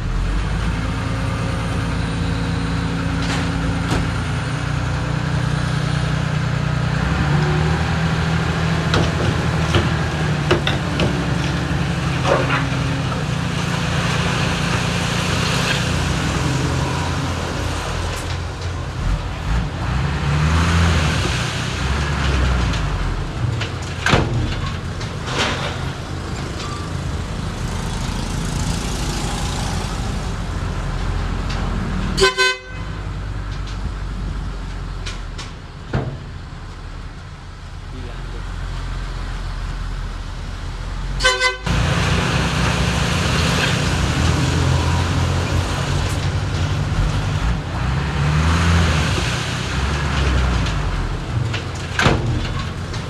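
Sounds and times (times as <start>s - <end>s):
diesel engines running: 0.0s - 53.0s.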